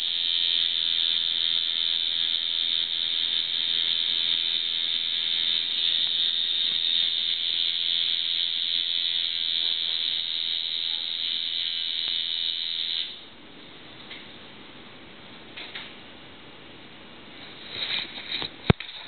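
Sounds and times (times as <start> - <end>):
tattoo machine buzzing: 0.0 - 13.3.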